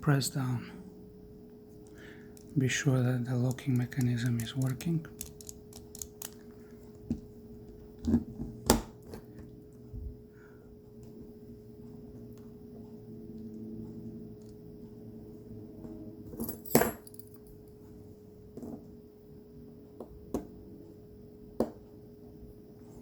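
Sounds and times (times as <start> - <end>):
faint steady hum: 0.0 - 23.0
plastic parts clicking: 3.5 - 6.4.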